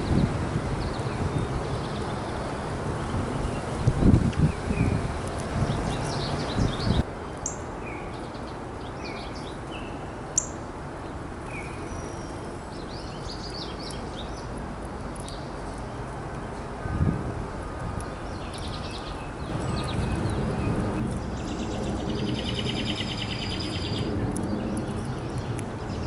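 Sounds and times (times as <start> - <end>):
birds chirping and calling: 5.7 - 10.6, 11.5 - 14.6, 17.7 - 26.0.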